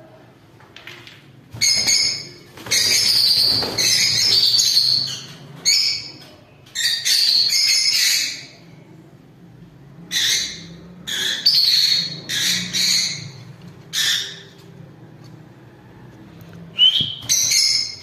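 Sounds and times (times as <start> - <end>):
lovebirds calling high-pitched: 1.6 - 8.8, 10.0 - 14.7, 16.8 - 18.0.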